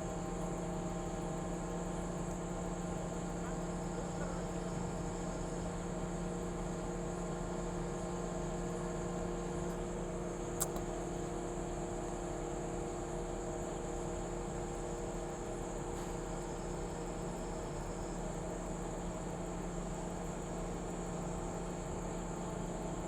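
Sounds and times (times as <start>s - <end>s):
short sharp click: 10.6s - 10.8s.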